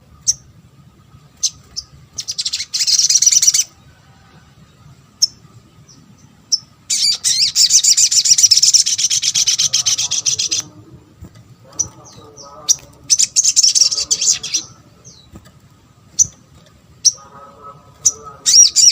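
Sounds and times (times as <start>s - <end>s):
bird chips and chattering trills: 1.3s - 3.7s, 6.5s - 18.9s.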